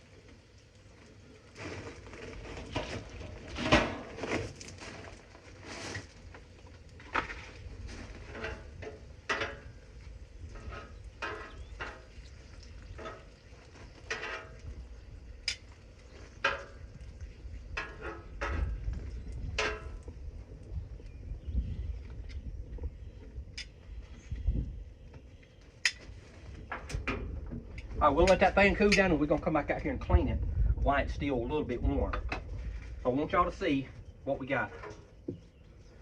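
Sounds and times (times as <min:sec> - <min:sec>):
metal utensil scraping on griddle: 0:07.8 - 0:12.2, 0:17.7 - 0:18.8.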